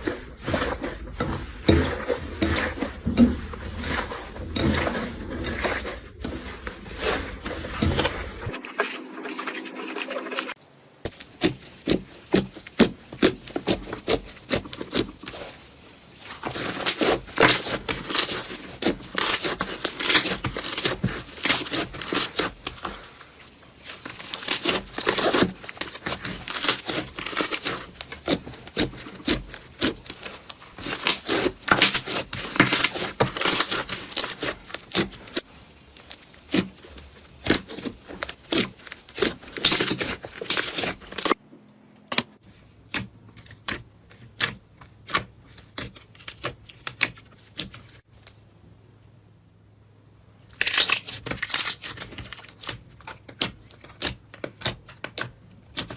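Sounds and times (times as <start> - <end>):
slime crackling and popping: 16.2 - 22.8, 23.8 - 41.4, 50.6 - 55.9.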